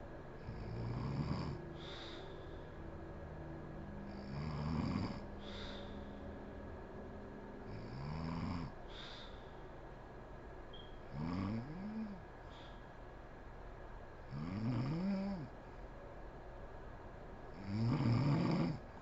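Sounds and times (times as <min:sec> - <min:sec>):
woman snoring: 0:00.4 - 0:02.7, 0:04.0 - 0:06.2, 0:07.7 - 0:09.4, 0:11.1 - 0:12.2, 0:14.3 - 0:15.5, 0:17.6 - 0:18.8
short breath: 0:01.7 - 0:02.8, 0:05.4 - 0:06.4, 0:08.9 - 0:09.6.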